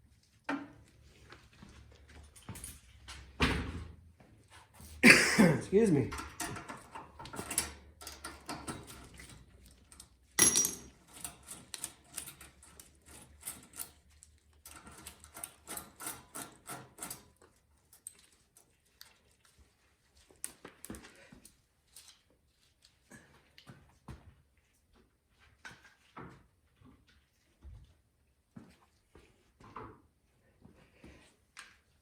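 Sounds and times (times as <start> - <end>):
metal parts and tools clinking: 10.4 - 14.0.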